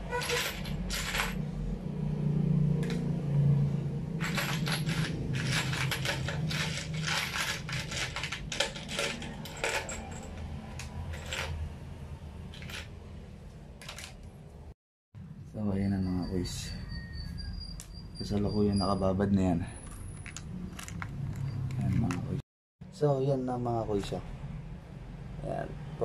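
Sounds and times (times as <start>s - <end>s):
metal bolts clinking: 4.2s - 11.6s.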